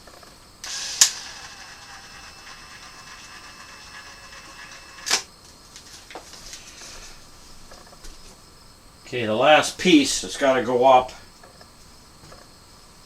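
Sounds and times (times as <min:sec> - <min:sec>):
sharp plastic clicks: 0:05.0 - 0:05.3.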